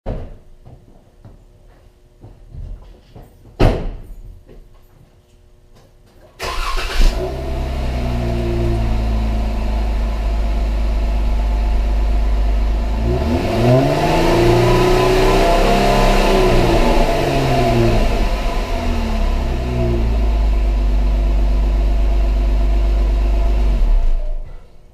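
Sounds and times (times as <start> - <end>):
engine revving: 6.4 - 24.4
car engine starting and idling: 6.4 - 24.8.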